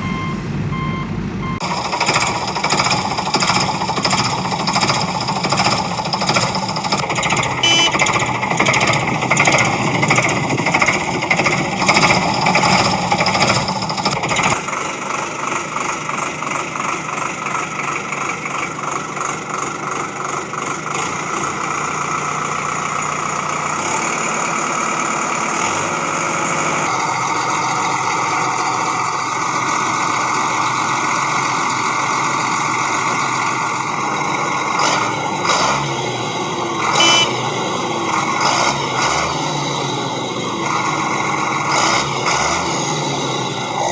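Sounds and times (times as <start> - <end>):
engine idling: 0.0 - 43.9.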